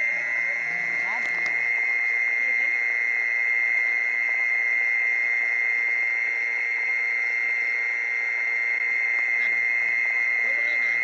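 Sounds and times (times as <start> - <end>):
cricket trill over loudspeaker: 0.0 - 11.0.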